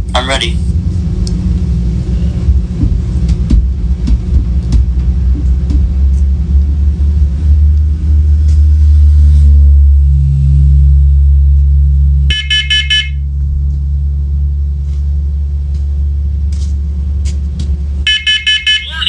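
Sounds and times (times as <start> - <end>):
loud low rumble: 0.0 - 17.2
carbon monoxide alarm beeps: 12.3 - 13.2, 18.1 - 19.0.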